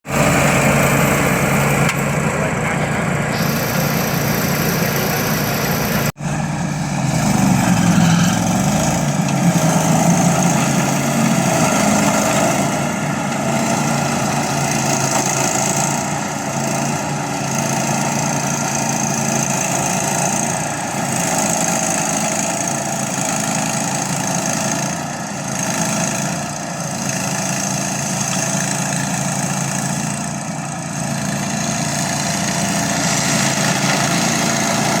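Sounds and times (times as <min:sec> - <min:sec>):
lawn mower engine running: 0:00.0 - 0:35.0.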